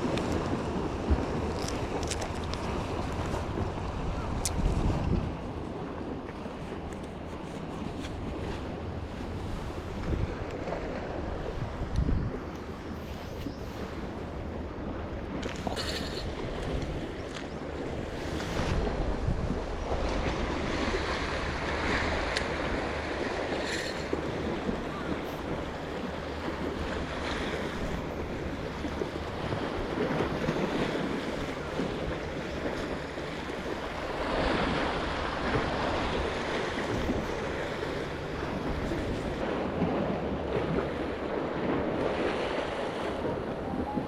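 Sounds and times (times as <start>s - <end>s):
wind buffeting microphone: 0.0s - 44.0s
waves washing against rocks: 13.8s - 44.0s.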